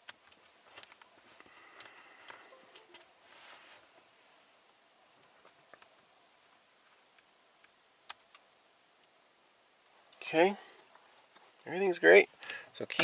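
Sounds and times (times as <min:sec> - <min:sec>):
soft hiss: 0:00.0 - 0:13.0
faint high-pitched tone: 0:02.4 - 0:03.6.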